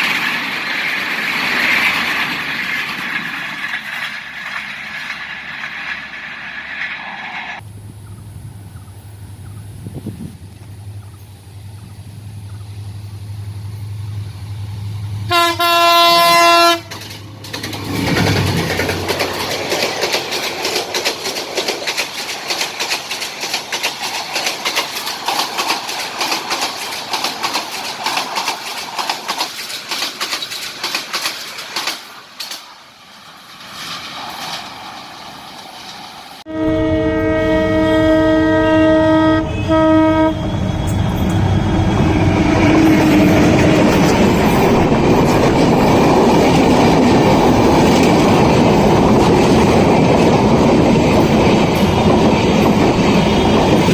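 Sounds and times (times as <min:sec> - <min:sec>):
train wheels clickety-clack: 0:00.0 - 0:07.6, 0:16.3 - 0:36.3, 0:40.6 - 0:53.9
locomotive engine hum: 0:00.0 - 0:53.9
multi-tone train horn: 0:15.2 - 0:17.1, 0:36.5 - 0:44.1.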